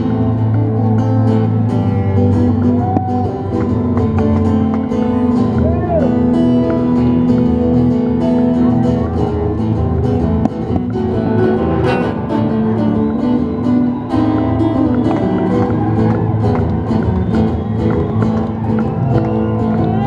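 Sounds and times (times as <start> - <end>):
bass: 0.0 - 20.0
live rock music with guitar: 0.0 - 20.0.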